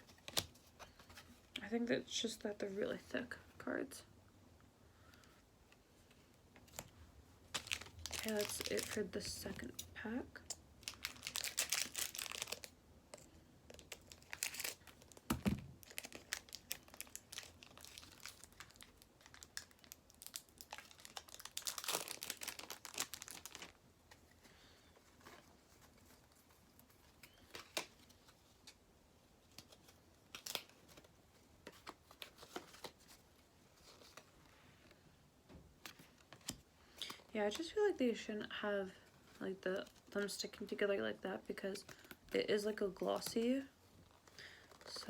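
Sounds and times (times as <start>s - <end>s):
wrapper crinkling and tearing: 7.5s - 23.8s, 29.5s - 31.1s, 44.0s - 45.0s.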